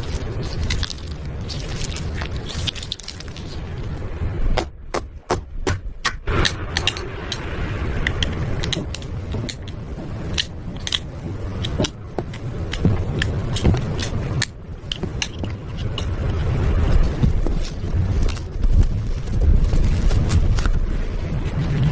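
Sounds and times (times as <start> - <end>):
slime being mixed by hand: 0.0 - 4.0
low rumble: 0.0 - 21.9
sharp clicks and pops: 4.6 - 16.3.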